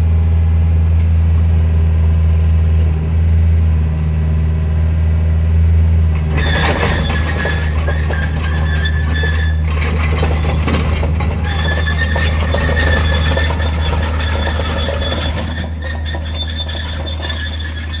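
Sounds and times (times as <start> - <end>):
excavator engine hum: 0.0 - 18.0
high-pitched machine squeal: 6.2 - 18.0.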